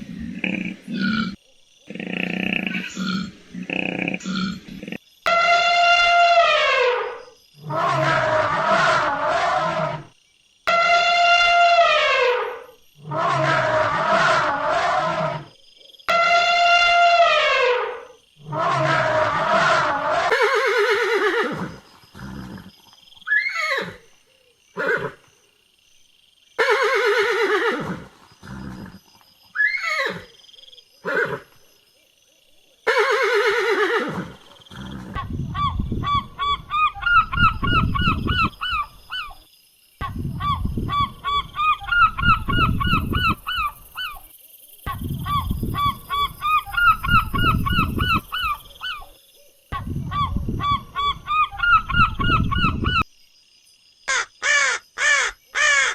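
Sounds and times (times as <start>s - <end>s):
horse whinnying: 18.5s - 22.7s, 26.6s - 29.0s, 29.6s - 30.3s, 32.9s - 36.3s.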